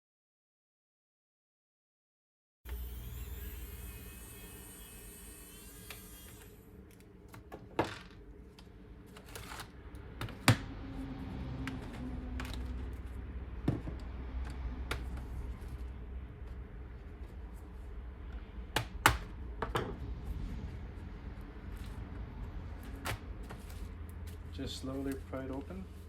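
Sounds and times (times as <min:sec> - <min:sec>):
electric screwdriver motor whining: 0:02.7 - 0:06.6.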